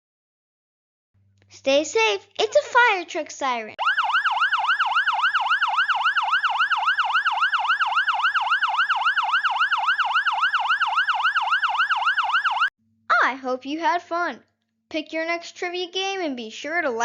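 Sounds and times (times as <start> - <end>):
fire truck siren yelping: 3.8 - 12.7.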